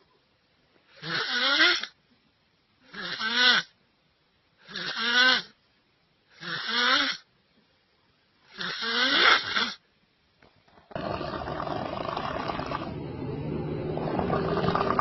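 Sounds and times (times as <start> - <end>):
pitched wavering snoring: 10.9 - 15.0.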